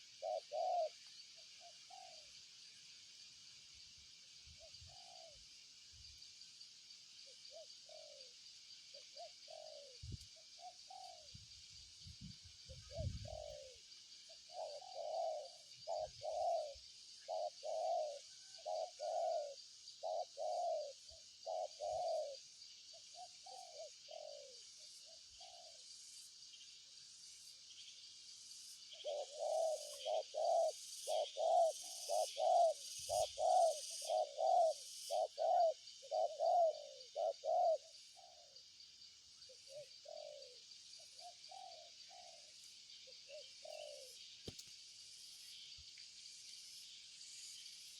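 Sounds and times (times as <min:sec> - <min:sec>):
dove cooing: 0:00.0 - 0:02.3, 0:04.6 - 0:05.5, 0:07.5 - 0:11.4, 0:12.7 - 0:25.8, 0:28.9 - 0:38.6, 0:39.5 - 0:40.6, 0:41.2 - 0:42.5, 0:43.3 - 0:44.2.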